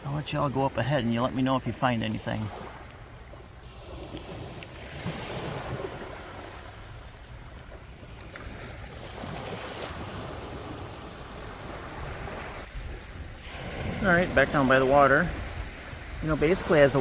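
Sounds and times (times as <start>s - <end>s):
surf washing onto beach: 3.6s - 17.0s.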